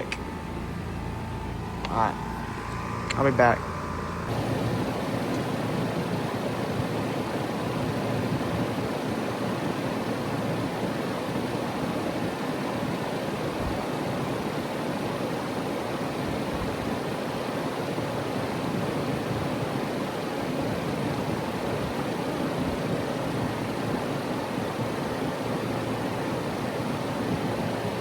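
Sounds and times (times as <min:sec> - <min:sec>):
heat pump whooshing hum: 0:00.0 - 0:28.0.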